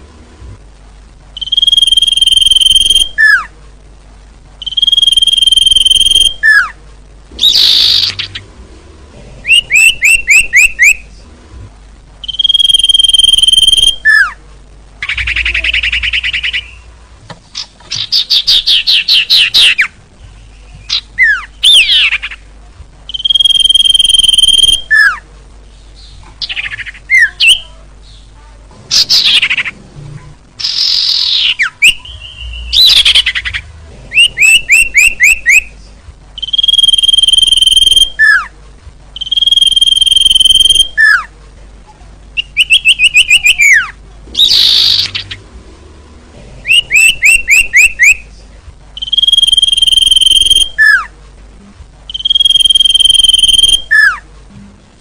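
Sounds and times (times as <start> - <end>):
songbird calls: 1.4 - 3.5, 4.6 - 6.8, 7.4 - 8.5, 9.4 - 11.1, 12.2 - 14.4, 15.0 - 17.0, 23.1 - 25.2, 30.6 - 35.8, 36.4 - 38.5, 39.2 - 41.3, 42.4 - 45.5, 46.6 - 48.2, 49.0 - 51.1, 52.1 - 54.2
loud sweeping bird calls: 7.4 - 8.5, 30.6 - 35.7, 42.4 - 45.5, 46.6 - 48.2.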